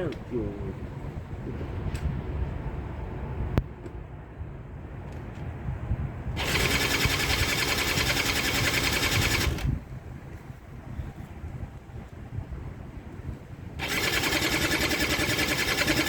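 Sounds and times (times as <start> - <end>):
small engine cranking: 6.4 - 9.8, 13.8 - 16.0.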